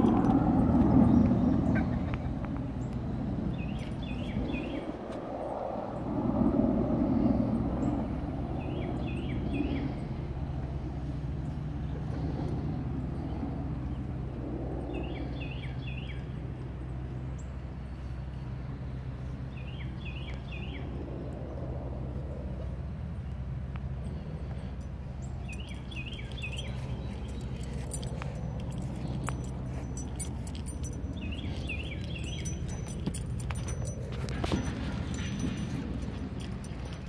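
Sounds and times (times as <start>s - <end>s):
steady low hum: 0.0s - 37.0s
small bird chirping: 24.1s - 37.0s.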